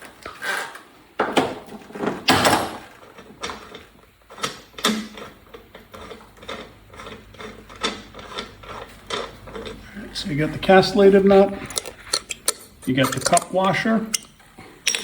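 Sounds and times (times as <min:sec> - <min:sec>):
metal parts clicking and scraping: 0:03.2 - 0:09.8, 0:11.4 - 0:15.0.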